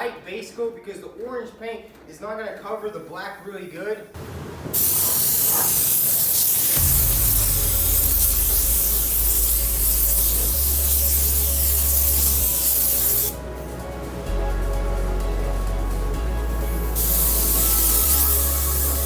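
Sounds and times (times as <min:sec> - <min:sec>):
paint spray gun hissing: 0:04.7 - 0:13.4, 0:16.7 - 0:19.0
background music with bass: 0:06.8 - 0:19.0.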